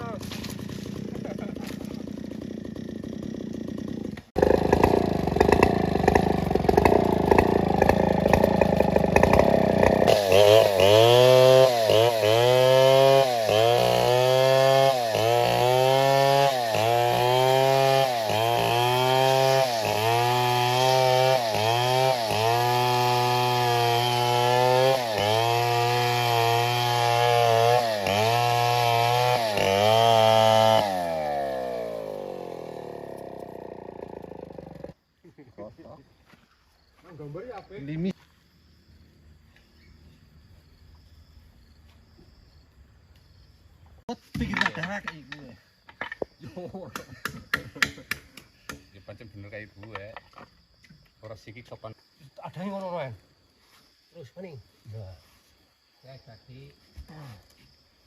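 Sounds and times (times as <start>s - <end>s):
chainsaw cutting wood: 0.1s - 35.0s, 47.0s - 48.8s.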